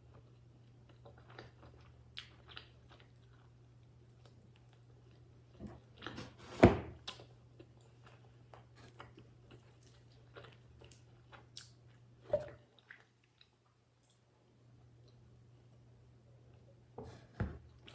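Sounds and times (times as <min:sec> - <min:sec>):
person chewing: 0:00.1 - 0:03.5, 0:07.0 - 0:12.0.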